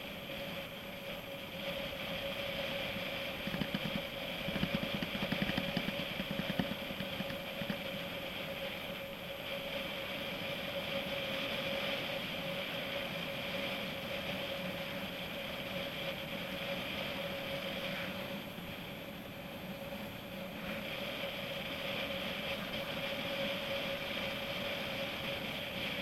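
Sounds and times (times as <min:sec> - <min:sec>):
bike tyres rolling: 0:02.9 - 0:08.1
bike rattling: 0:03.0 - 0:08.1.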